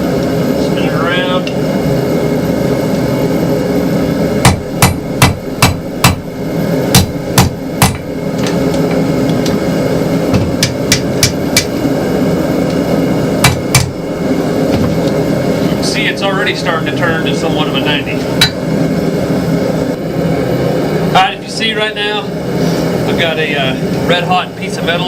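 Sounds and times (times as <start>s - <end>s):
steady hum: 0.0s - 25.0s
hammer striking steel on anvil: 4.4s - 6.3s, 6.9s - 8.1s, 10.4s - 11.8s, 13.4s - 14.0s, 18.4s - 18.6s.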